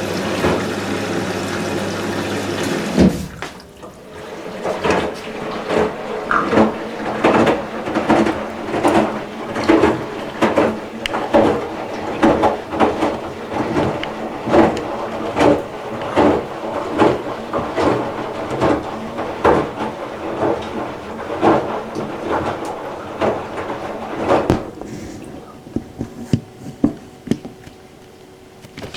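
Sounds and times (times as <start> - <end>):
washing machine load thudding: 0.0 - 28.3
washing machine motor hum: 0.0 - 28.9.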